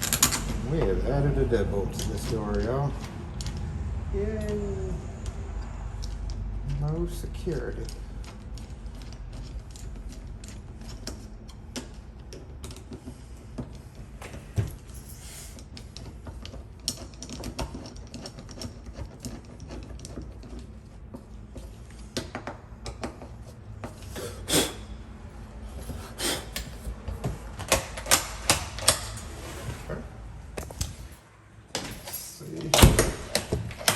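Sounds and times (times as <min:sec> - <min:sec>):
metal hardware clicking and clacking: 0:00.0 - 0:00.9, 0:27.6 - 0:29.3, 0:30.6 - 0:33.9.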